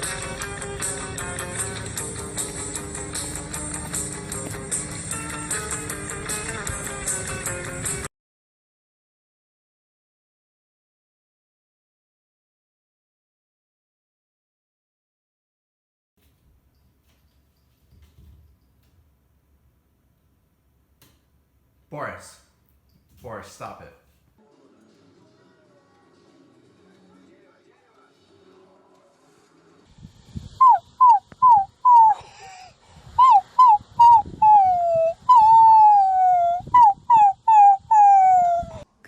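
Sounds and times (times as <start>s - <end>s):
dog whining and howling: 30.6s - 38.8s.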